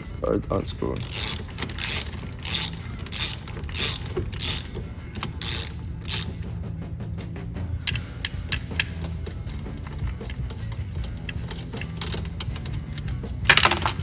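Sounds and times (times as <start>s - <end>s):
socket ratchet clicking: 0.9s - 6.6s, 7.2s - 14.0s.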